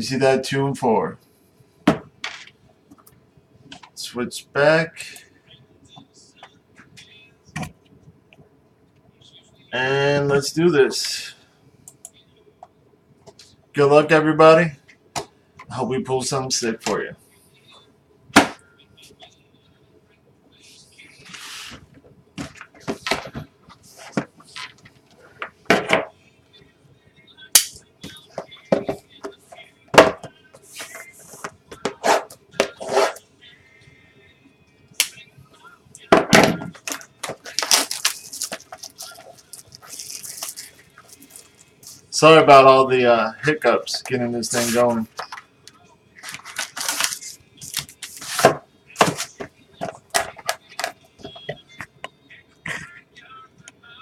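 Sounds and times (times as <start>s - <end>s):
packaging tearing and rustling: 36.8s - 41.6s, 46.2s - 48.5s.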